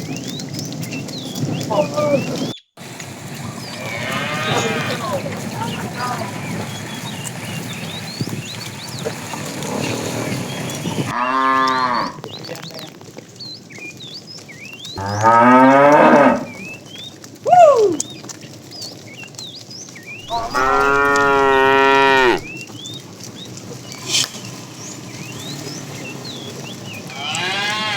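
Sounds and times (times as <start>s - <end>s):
cattle mooing: 3.6s - 5.3s, 11.1s - 12.2s, 15.0s - 16.6s, 20.2s - 22.5s, 27.1s - 27.9s.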